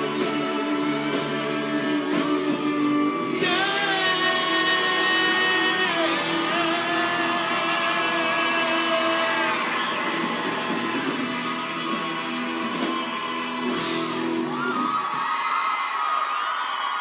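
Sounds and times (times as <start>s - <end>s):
person singing: 0.0s - 10.4s
live band playing chords: 0.0s - 15.3s.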